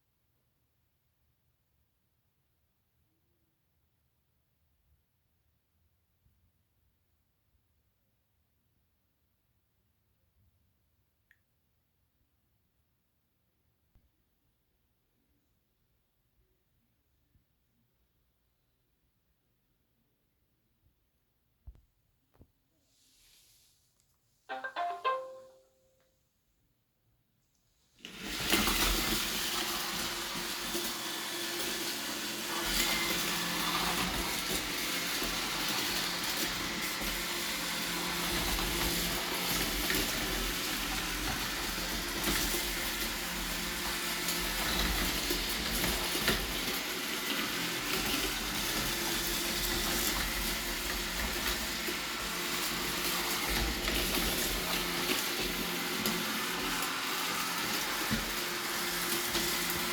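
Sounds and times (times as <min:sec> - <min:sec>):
robot vacuum cleaner running: 0:28.1 - 0:59.9.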